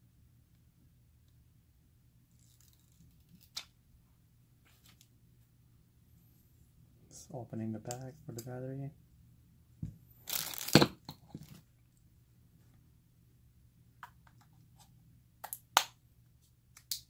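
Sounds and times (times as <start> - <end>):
plastic bag tearing: 10.2 - 11.0.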